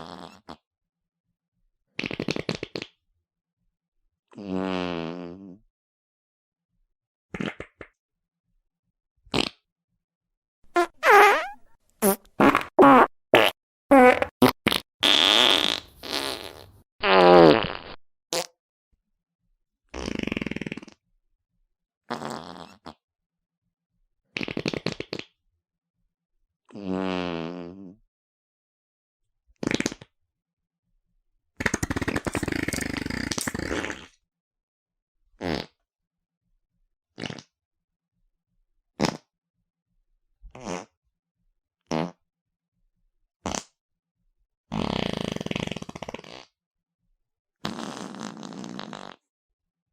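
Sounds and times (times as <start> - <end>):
fart sound effects: 4.4 - 5.6, 9.3 - 9.6, 10.7 - 18.5, 22.1 - 23.0, 26.8 - 28.0, 29.6 - 30.0, 31.6 - 34.2, 35.4 - 35.8, 37.2 - 37.5, 39.0 - 39.3, 41.9 - 42.2, 43.5 - 43.7, 44.7 - 46.5, 47.6 - 49.2.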